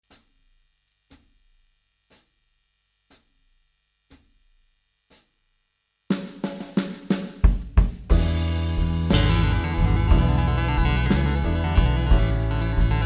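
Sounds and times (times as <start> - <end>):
sharp count-in ticks: 0.0 - 0.4, 1.1 - 1.4, 2.1 - 2.4, 3.1 - 3.4, 4.1 - 5.4
blues drum kit playing: 6.1 - 13.0.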